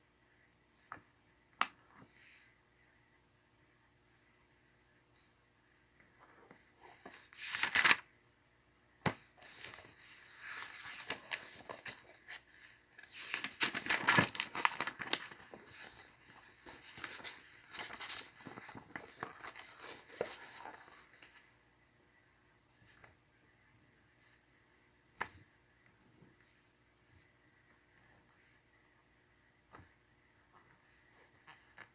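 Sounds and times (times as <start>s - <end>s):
paper rustling and crinkling: 6.8s - 8.0s, 9.1s - 21.5s.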